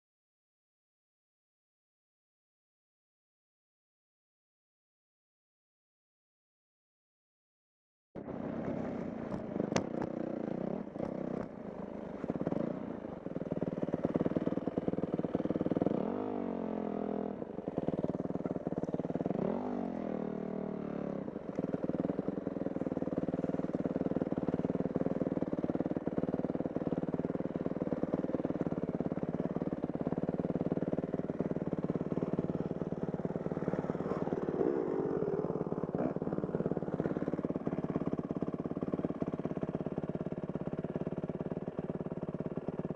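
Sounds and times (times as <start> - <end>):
dirt bike engine revving: 12.2 - 38.0.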